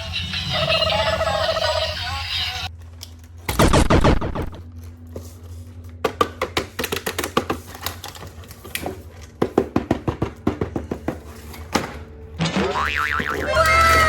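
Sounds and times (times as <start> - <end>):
warbling tone: 3.6 - 4.6.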